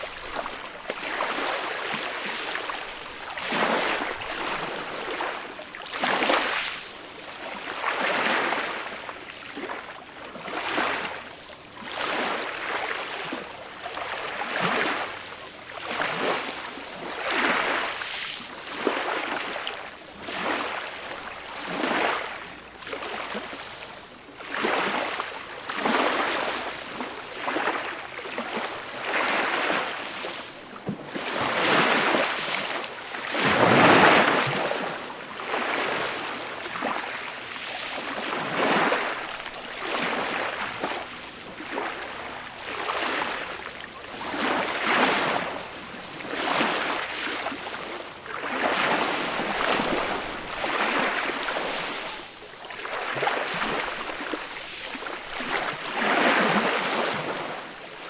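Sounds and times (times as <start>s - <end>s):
small waves breaking on shore: 0.0s - 58.0s.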